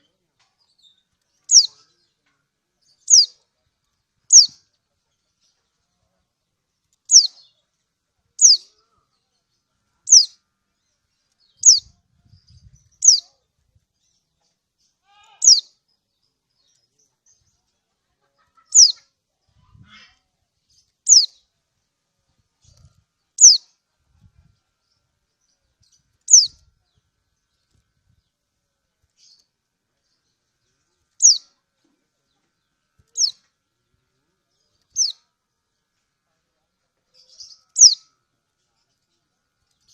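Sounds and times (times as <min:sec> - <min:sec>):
bird chirping high: 0:01.5 - 0:01.8, 0:03.1 - 0:03.3, 0:04.3 - 0:04.6, 0:07.1 - 0:07.5, 0:08.4 - 0:08.7, 0:10.1 - 0:10.4, 0:11.6 - 0:11.9, 0:12.8 - 0:13.3, 0:15.2 - 0:15.7, 0:18.6 - 0:19.0, 0:21.1 - 0:21.4, 0:23.4 - 0:23.6, 0:26.3 - 0:26.6, 0:31.2 - 0:31.5, 0:33.1 - 0:33.5, 0:34.9 - 0:35.2, 0:37.4 - 0:38.0.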